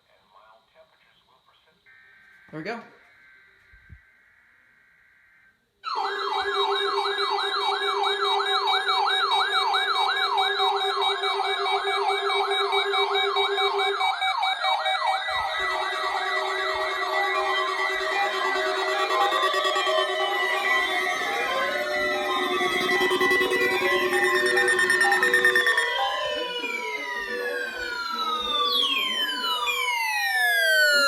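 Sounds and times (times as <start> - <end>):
electronic siren yelping: 5.8 - 31.0
steady low tone: 14.8 - 29.7.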